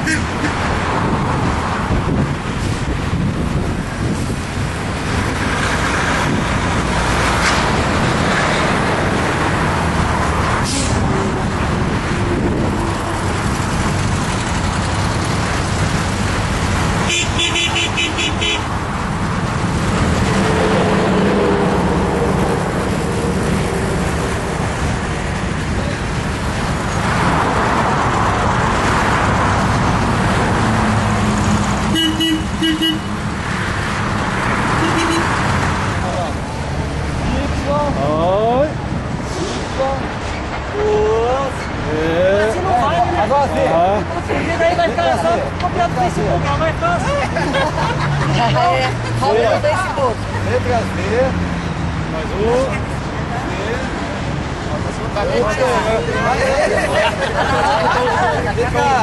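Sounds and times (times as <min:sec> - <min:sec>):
car horn tooting: 0:00.0 - 0:00.6, 0:17.0 - 0:18.7, 0:31.9 - 0:33.2, 0:34.8 - 0:35.4
car engine and road noise: 0:00.0 - 0:59.0.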